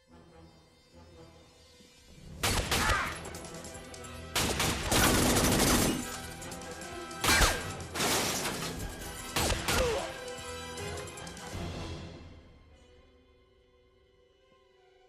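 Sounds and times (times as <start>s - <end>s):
film score music: 0.0s - 15.0s
rapid gunfire: 2.4s - 3.6s, 4.4s - 6.6s, 7.2s - 8.7s, 9.3s - 10.2s
things shattering and crashing: 2.4s - 11.4s.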